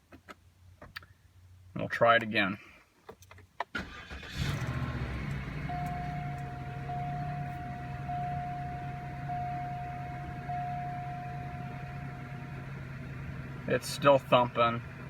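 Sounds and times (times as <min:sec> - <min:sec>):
car engine running rough: 0:04.1 - 0:15.0
high electronic warning tone: 0:05.6 - 0:12.4.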